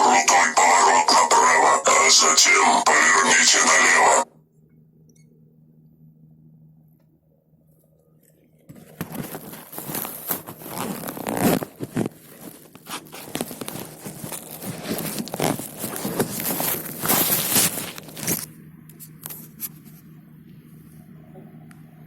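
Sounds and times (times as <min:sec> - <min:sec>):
faint steady hum: 0:00.0 - 0:22.0
gear rustling against microphone: 0:08.7 - 0:18.5.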